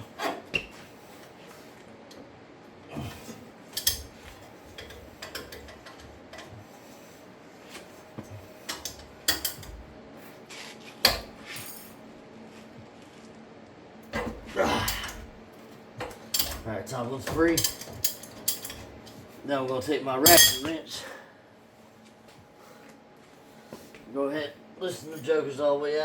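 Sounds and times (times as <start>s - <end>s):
metal tools clinking and knocking: 3.8s - 4.2s, 8.7s - 9.8s, 16.0s - 16.7s, 17.3s - 19.2s, 20.2s - 20.7s.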